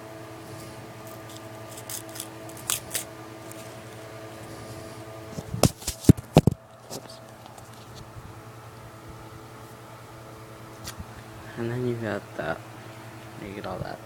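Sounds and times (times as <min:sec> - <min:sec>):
low hum: 0:00.0 - 0:14.0
clicks and snips of paper: 0:01.1 - 0:03.6.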